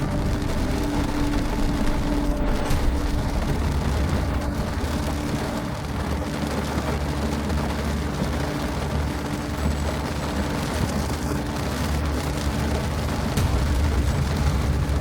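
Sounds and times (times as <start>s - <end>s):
heavy rain on a car: 0.0s - 15.0s
steady low rumble: 0.0s - 15.0s.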